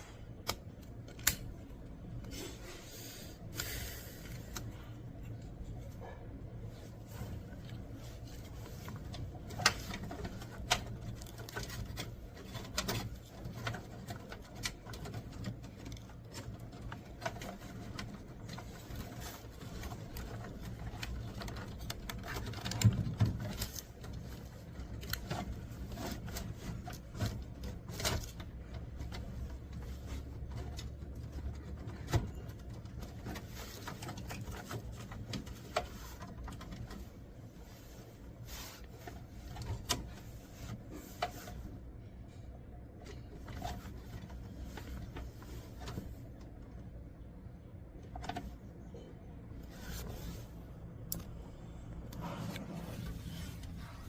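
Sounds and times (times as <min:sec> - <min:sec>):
steady low hum: 0:00.0 - 0:54.0
computer hardware clicks and knocks: 0:08.8 - 0:37.1.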